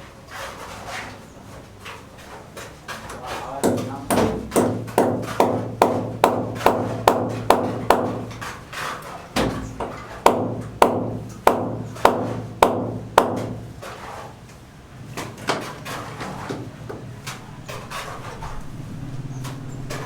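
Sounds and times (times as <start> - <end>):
hammer blows ringing: 3.6 - 8.2.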